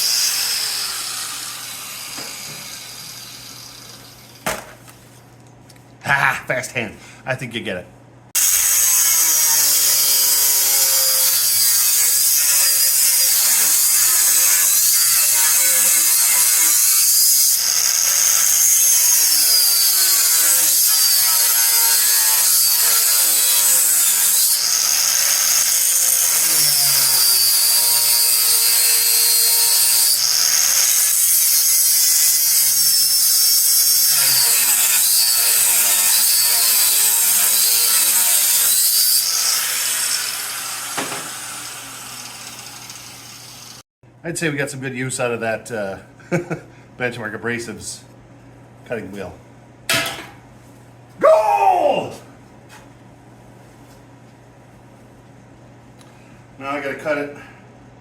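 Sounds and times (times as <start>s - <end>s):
angle grinder cutting steel: 0.0s - 4.4s, 8.4s - 43.8s.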